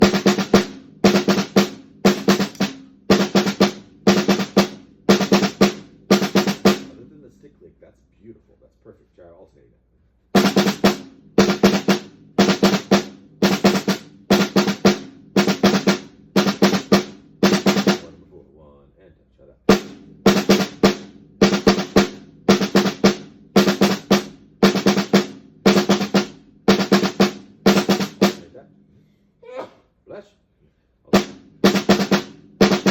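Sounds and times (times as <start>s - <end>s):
drum strokes in quick groups: 0.0s - 7.4s, 10.3s - 18.2s, 19.7s - 28.6s, 31.1s - 32.9s.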